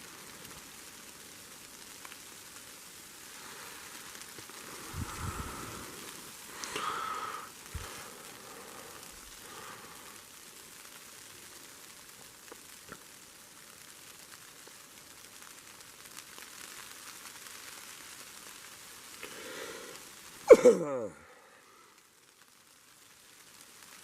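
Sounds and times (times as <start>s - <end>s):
faint steady hiss: 0.0s - 24.0s
person sighing loudly: 4.9s - 8.8s, 20.5s - 21.6s.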